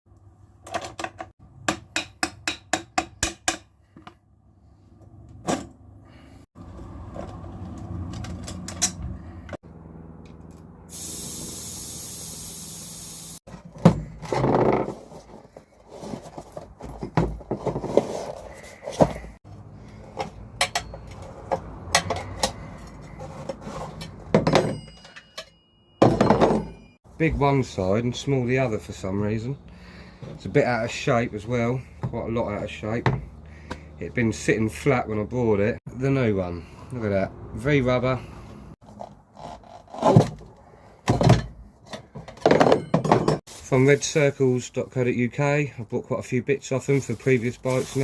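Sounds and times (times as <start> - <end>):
hand tools clattering: 41.1 - 43.5.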